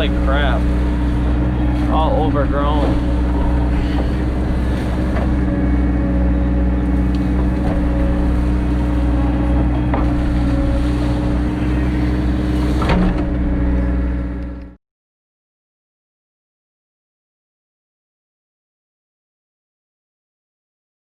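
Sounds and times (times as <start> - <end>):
diesel engine running under load: 0.0 - 14.8.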